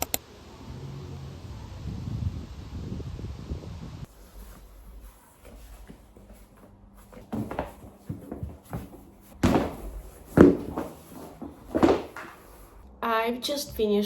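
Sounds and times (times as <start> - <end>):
knocks and thuds: 7.2 - 12.4.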